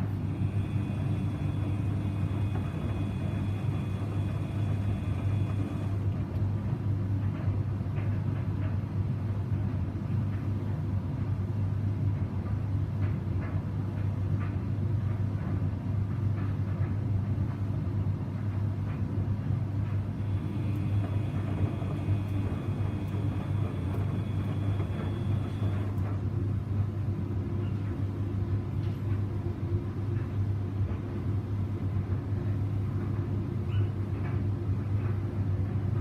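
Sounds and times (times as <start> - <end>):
drum turning rumble: 0.0 - 10.8, 18.5 - 36.0
washing machine hum: 0.0 - 36.0.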